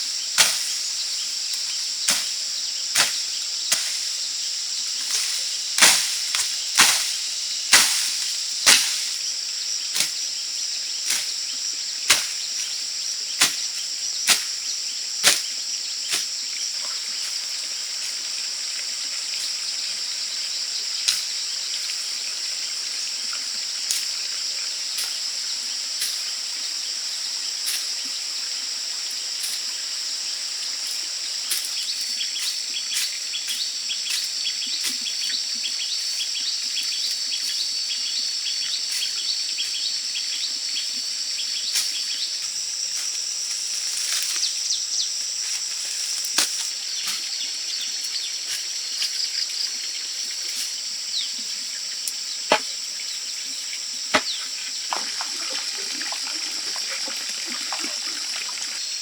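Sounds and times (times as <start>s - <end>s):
insects chirring: 0.0s - 59.0s
sharp knocks: 54.1s - 54.4s.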